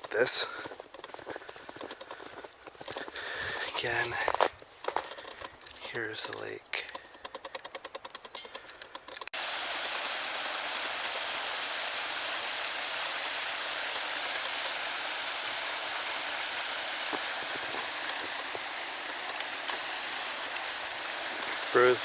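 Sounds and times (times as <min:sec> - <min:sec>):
water rushing: 0:09.4 - 0:22.0.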